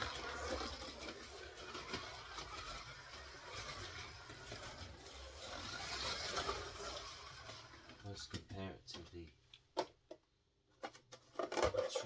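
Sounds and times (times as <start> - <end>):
slot car whirring on track: 0.0 - 8.0.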